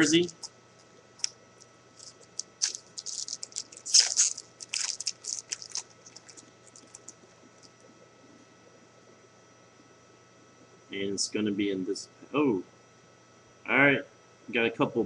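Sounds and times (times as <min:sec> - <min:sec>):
plastic wrapper crinkling: 0:00.0 - 0:00.5, 0:02.0 - 0:07.8
wrapper tearing: 0:02.0 - 0:07.1.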